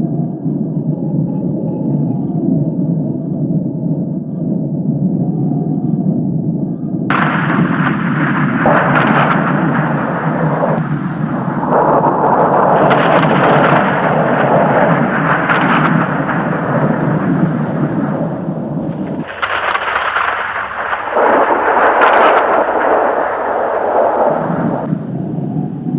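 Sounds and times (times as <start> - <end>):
thunder-like storm rumbling: 7.1 - 25.9.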